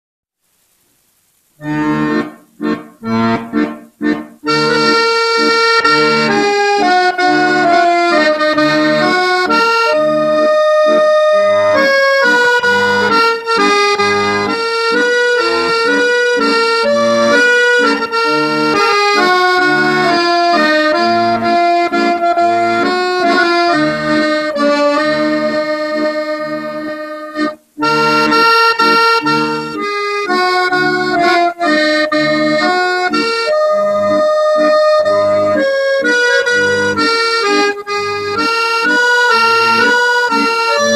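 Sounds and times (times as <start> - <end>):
accordion folk music: 1.6 - 40.9.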